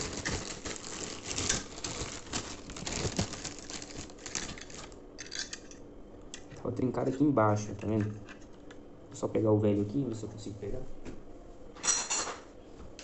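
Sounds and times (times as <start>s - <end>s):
plastic packaging crinkling: 0.0s - 5.0s.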